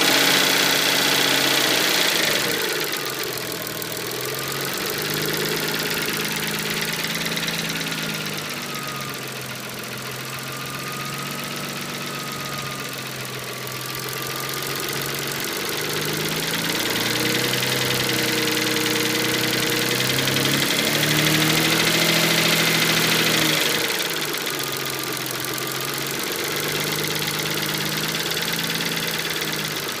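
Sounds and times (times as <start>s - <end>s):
car engine knocking: 0.0s - 30.0s.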